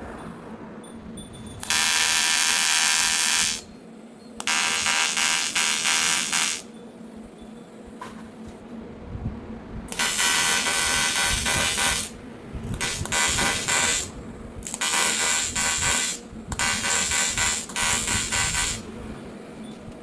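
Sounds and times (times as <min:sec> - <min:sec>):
welding arc buzzing: 0:01.6 - 0:03.8, 0:04.4 - 0:06.8, 0:09.9 - 0:19.8.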